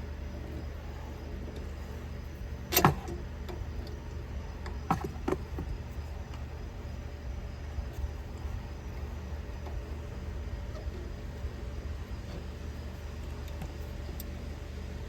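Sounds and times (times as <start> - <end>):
steady low hum: 0.0 - 15.0
tools and parts knocking: 4.8 - 5.8
light clicks: 13.2 - 14.4.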